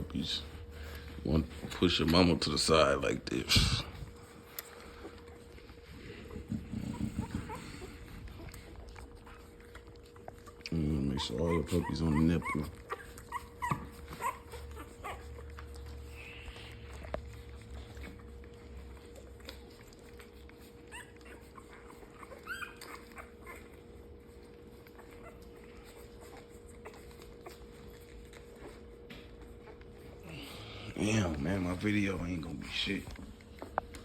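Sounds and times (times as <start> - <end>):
puppies squeaking and whimpering: 0.0 - 34.0.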